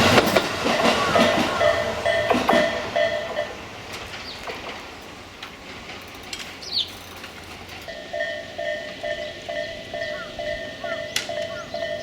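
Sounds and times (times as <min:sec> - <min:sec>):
level crossing warning bell: 0:00.0 - 0:05.2, 0:06.1 - 0:12.0
train wheel knocks: 0:00.0 - 0:12.0
bird chirp: 0:04.1 - 0:04.6, 0:06.6 - 0:07.0, 0:08.0 - 0:12.0.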